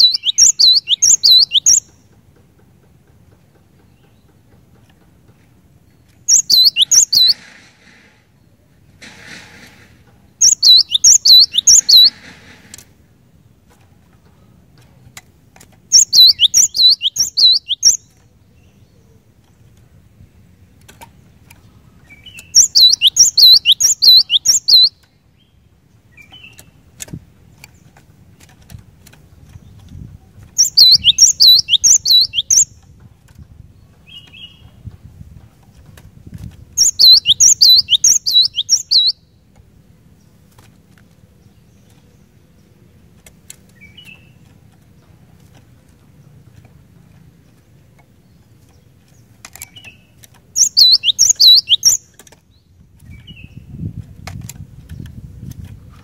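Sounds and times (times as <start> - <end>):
bird singing high descending notes: 0.0 - 1.8, 6.3 - 7.4, 10.4 - 12.2, 15.9 - 18.0, 22.1 - 25.0, 30.6 - 32.7, 36.8 - 39.2, 50.6 - 52.0.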